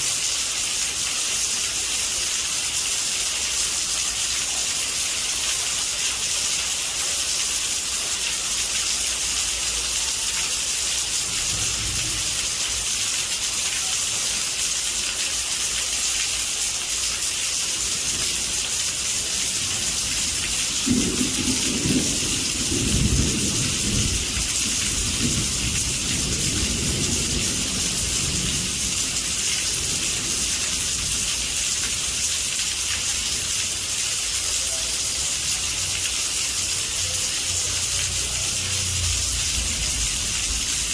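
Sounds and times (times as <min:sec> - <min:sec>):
heavy rain on a roof: 0:00.0 - 0:40.9
thunder rumbling: 0:20.2 - 0:31.3, 0:39.0 - 0:40.9.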